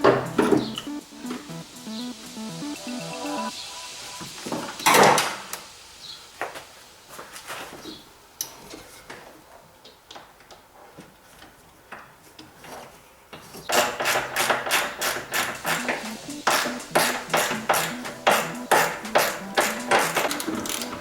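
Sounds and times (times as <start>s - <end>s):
fast rhythmic music: 0.0s - 4.4s, 15.0s - 21.0s.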